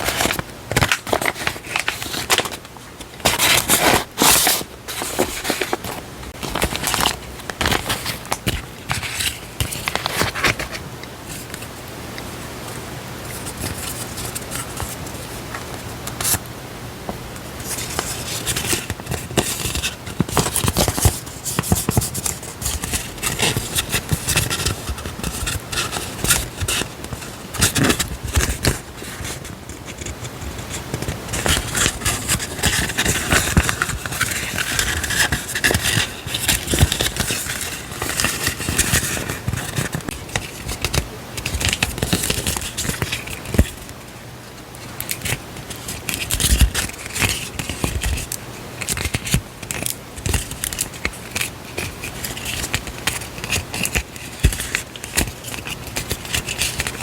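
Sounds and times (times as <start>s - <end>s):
paper rustling and crinkling: 0.0s - 11.9s, 12.6s - 16.5s, 17.1s - 57.0s.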